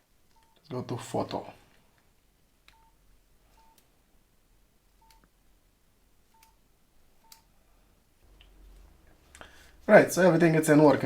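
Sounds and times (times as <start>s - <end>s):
phone keypad beeps: 2.7s - 3.0s, 3.6s - 3.8s, 6.3s - 6.6s.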